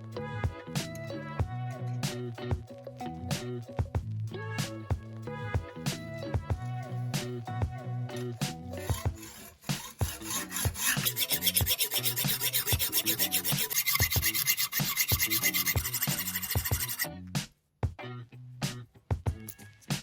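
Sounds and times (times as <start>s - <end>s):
scattered scrapes: 8.2s - 17.0s
hand file rasping: 8.2s - 17.1s.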